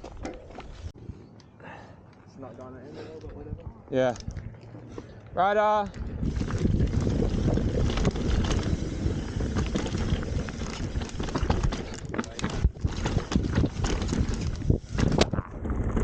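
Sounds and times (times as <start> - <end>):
wind buffeting microphone: 3.2 - 16.0
tyres on dirt and loose rock: 4.0 - 16.0
bike clattering: 5.9 - 16.0.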